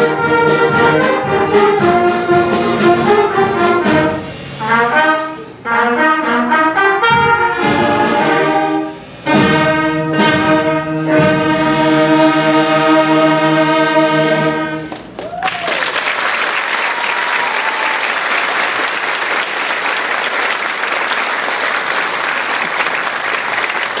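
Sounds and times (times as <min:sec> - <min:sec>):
concert band with brass: 0:00.0 - 0:24.0
audience applause: 0:14.9 - 0:24.0.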